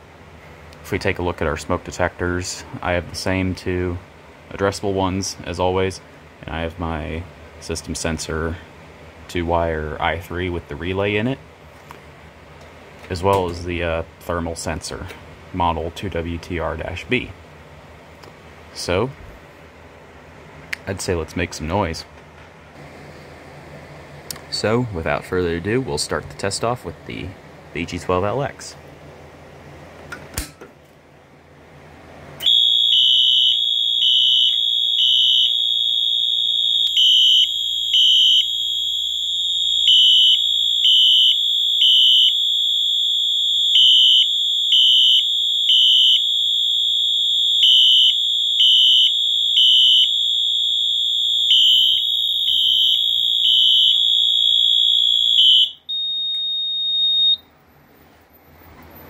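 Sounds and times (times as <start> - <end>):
horn strobe pulsing: 32.4 - 57.3
fire alarm horn continuous tone: 32.4 - 57.4.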